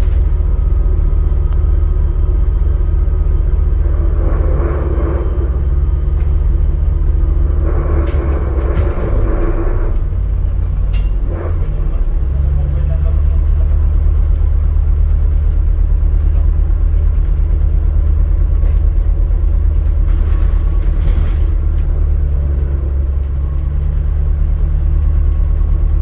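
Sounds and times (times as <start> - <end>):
bus engine low rumble: 0.0 - 26.0.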